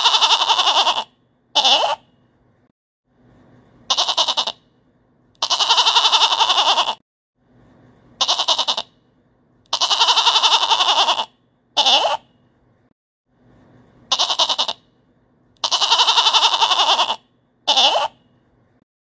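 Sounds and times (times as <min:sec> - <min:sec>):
goat bleating: 0:00.0 - 0:02.0, 0:03.9 - 0:04.6, 0:05.4 - 0:07.0, 0:08.2 - 0:08.9, 0:09.7 - 0:12.2, 0:14.1 - 0:14.8, 0:15.6 - 0:18.1.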